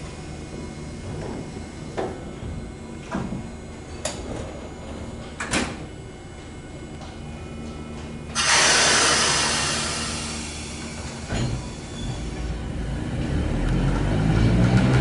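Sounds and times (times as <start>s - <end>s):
tram doors closing: 0.1s - 15.0s
loud air hiss: 8.4s - 11.3s.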